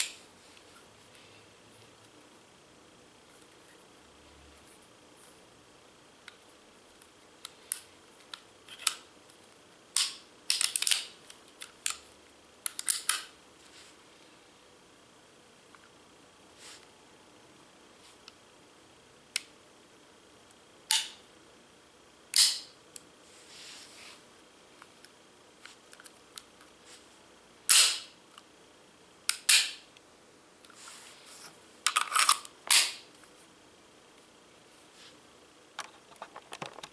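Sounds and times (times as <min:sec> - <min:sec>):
pistol metal clicks: 0:22.3 - 0:22.7.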